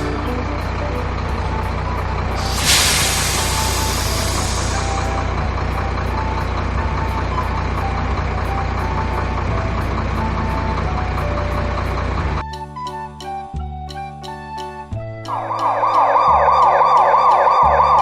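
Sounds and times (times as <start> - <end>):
truck engine idling: 0.0 - 12.4
light background music: 0.0 - 18.0.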